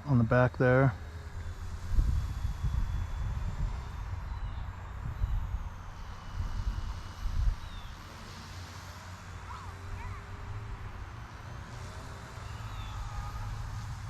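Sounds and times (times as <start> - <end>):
steady low rumble: 0.0 - 8.3
toy helicopter motor whine: 1.0 - 14.0.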